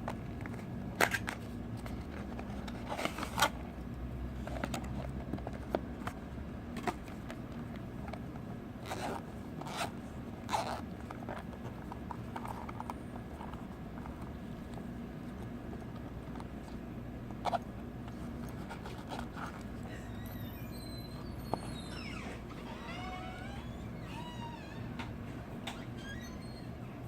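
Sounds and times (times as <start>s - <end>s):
steady low hum: 0.0s - 27.0s
packaging scraping and rustling: 0.3s - 3.6s.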